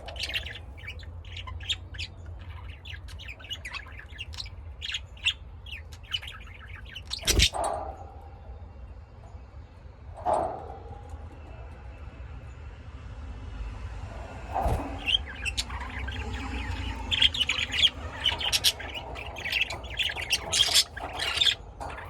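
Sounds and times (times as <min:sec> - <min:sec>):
lovebirds chirping: 0:00.0 - 0:07.8, 0:14.4 - 0:22.0
low hum: 0:10.9 - 0:22.0.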